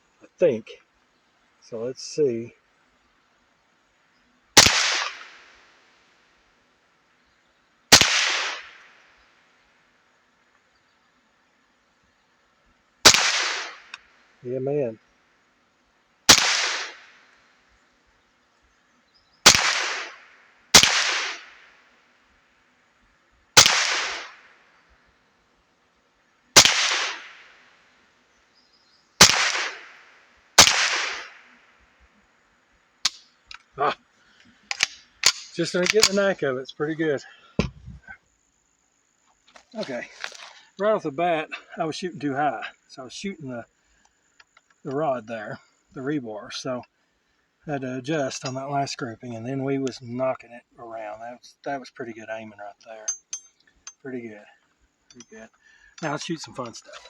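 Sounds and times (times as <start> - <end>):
rifle shots with echo: 4.6 - 5.5, 7.9 - 8.9, 13.0 - 14.0, 16.3 - 17.2, 19.4 - 21.6, 23.6 - 24.5, 26.6 - 27.5, 29.2 - 30.0, 30.6 - 31.4.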